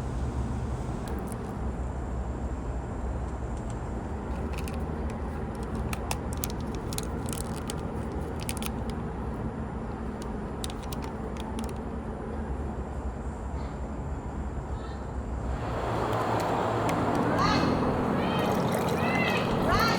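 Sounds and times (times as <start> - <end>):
low traffic rumble: 0.0 - 19.9
small sharp clicks and rattles: 3.3 - 9.4, 10.0 - 12.0.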